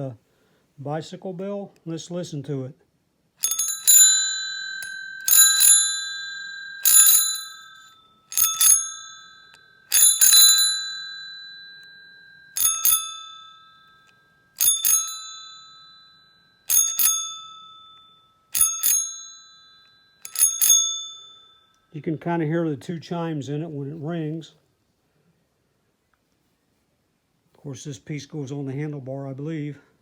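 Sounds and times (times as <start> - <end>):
two-chime bicycle bell ringing: 3.4 - 22.0.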